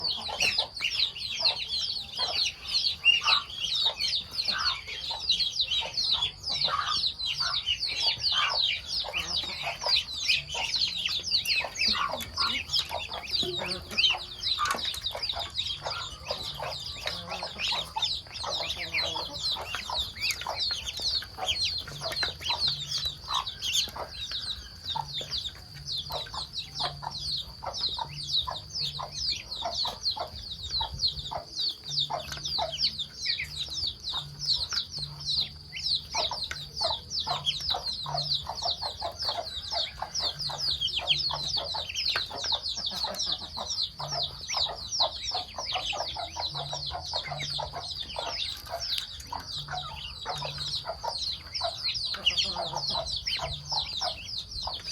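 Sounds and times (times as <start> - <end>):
high peeping of poultry: 0.0 - 54.9.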